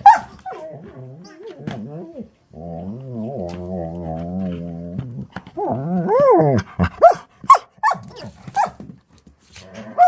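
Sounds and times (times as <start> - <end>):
dog whining: 0.0 - 8.8
dog moaning low: 0.6 - 6.9.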